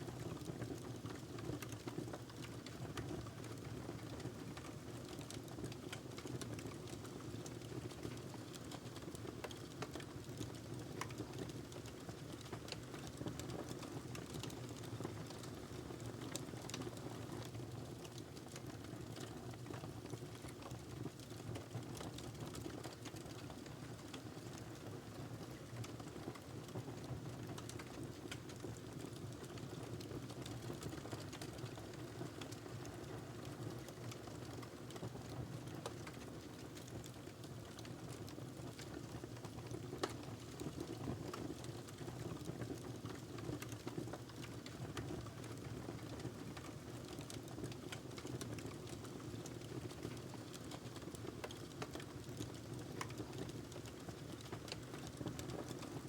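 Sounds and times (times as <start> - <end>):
fire crackling and popping: 4.5 - 21.4, 27.4 - 55.9.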